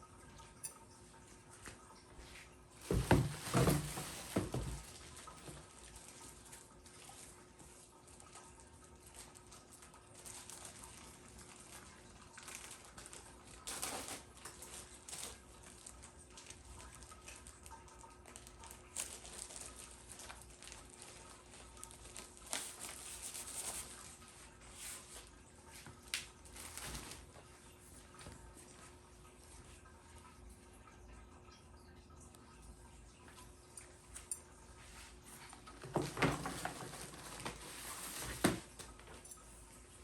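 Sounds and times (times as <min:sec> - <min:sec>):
faint steady hum: 0:00.0 - 0:40.0
rustling of things handled: 0:00.2 - 0:30.4, 0:33.1 - 0:40.0.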